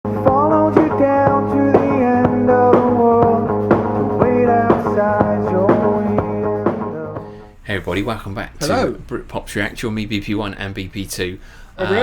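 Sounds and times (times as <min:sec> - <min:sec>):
upbeat rock music: 0:00.1 - 0:07.4.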